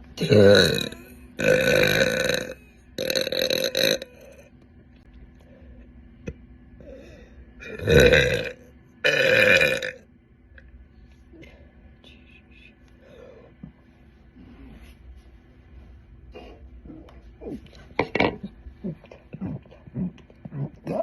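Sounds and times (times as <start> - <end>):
woman burping loudly: 0.2 - 4.5, 7.6 - 10.0.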